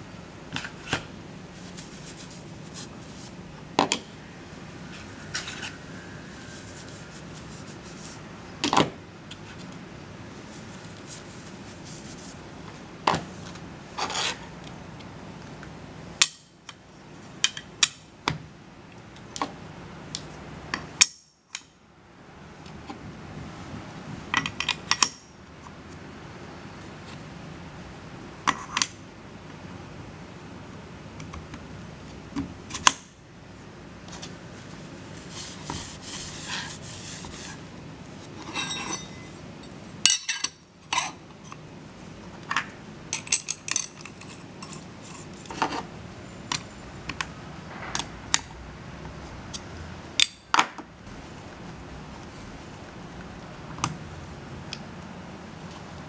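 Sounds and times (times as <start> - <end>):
low machine hum: 1.2 - 13.9, 50.9 - 56.0
steel parts clinking: 38.4 - 39.4.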